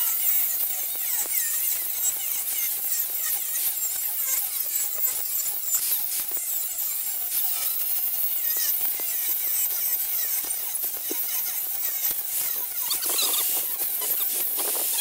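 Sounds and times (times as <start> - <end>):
angle grinder grinding steel: 0.0 - 15.0.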